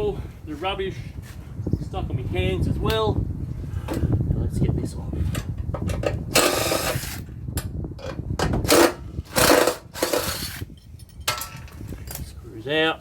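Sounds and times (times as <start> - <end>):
metal parts scraping and clicking: 8.0 - 12.2.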